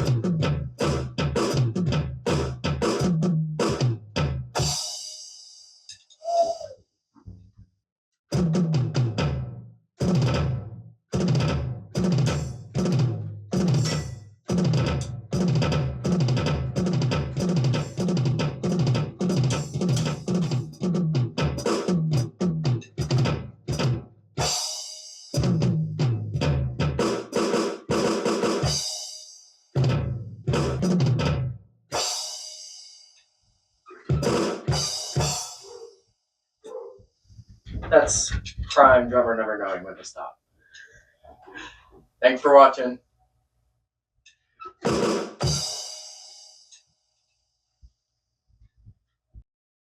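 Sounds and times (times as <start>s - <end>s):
electronic drum groove: 0.0s - 5.0s, 11.2s - 24.7s, 34.0s - 35.8s, 37.7s - 39.3s.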